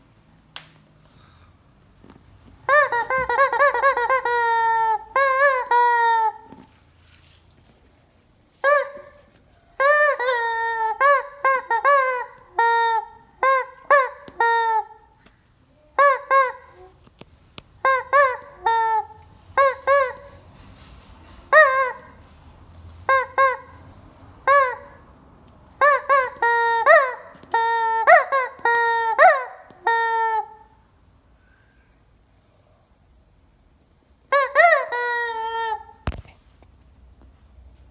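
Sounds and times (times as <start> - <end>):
squeaky rubber chicken toy: 2.6 - 6.8, 8.6 - 17.2, 17.8 - 20.6, 21.5 - 22.4, 23.0 - 25.2, 25.8 - 30.8, 34.3 - 36.3.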